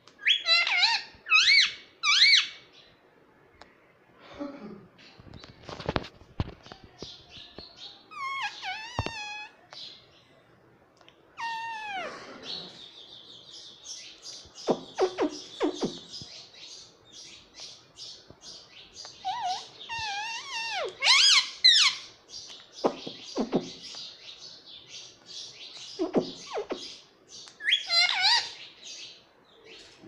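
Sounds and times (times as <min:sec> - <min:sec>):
parrot calling and chirping: 0:00.2 - 0:02.7, 0:08.0 - 0:09.6, 0:11.4 - 0:13.1, 0:14.6 - 0:16.2, 0:19.0 - 0:22.2, 0:25.9 - 0:28.7.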